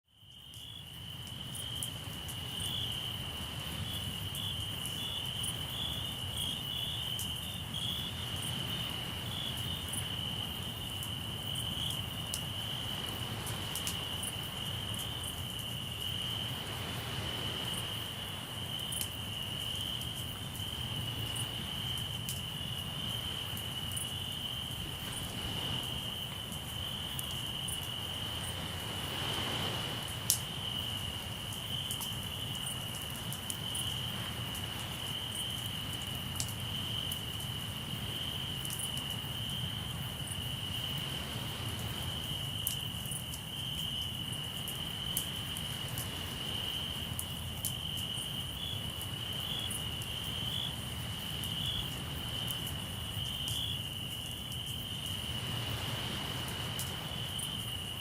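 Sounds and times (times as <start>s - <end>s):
crickets trilling: 0.1s - 58.0s
sea surf: 16.4s - 18.5s, 24.7s - 26.7s, 28.0s - 31.5s, 55.2s - 57.9s
campfire popping and crackling: 30.0s - 37.4s.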